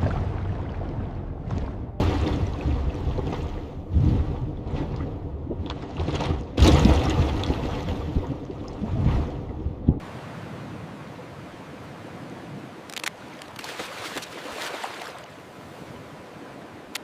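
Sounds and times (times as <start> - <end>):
low underwater rumble: 0.0 - 10.0
clicks and crackles: 12.9 - 13.8.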